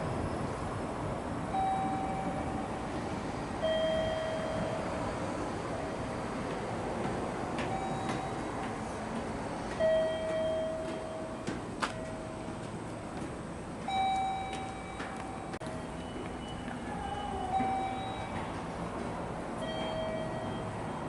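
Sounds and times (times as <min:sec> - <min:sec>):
train running rumble: 0:00.0 - 0:21.0
sustained high tones: 0:13.9 - 0:18.6.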